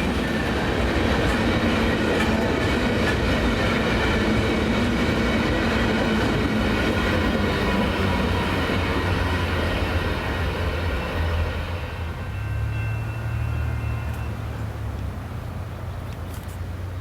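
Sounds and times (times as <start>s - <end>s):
train wheels rumbling on track: 0.0s - 17.0s.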